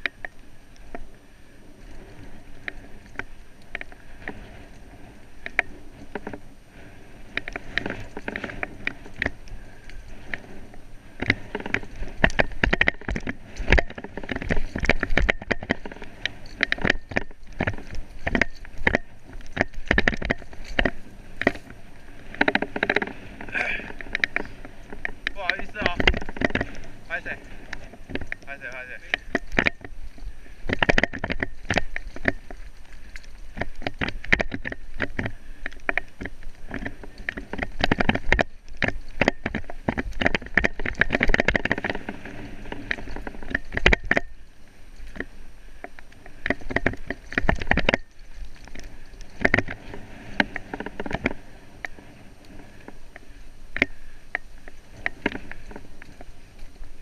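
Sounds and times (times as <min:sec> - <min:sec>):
off-road vehicle rumbling: 0:00.0 - 0:57.0
rapid knocks and rattles: 0:22.3 - 0:30.0.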